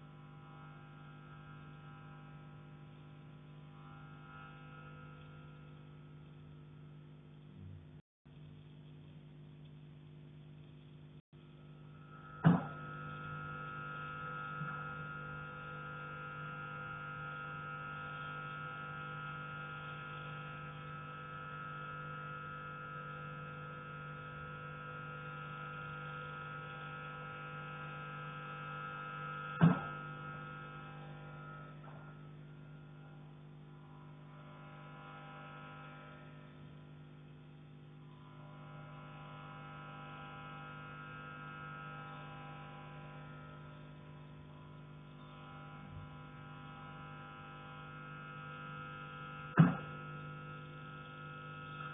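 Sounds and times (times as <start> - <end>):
steady hum with pitched tones: 0.0 - 51.9
knocks on a heating pipe: 49.6 - 49.9.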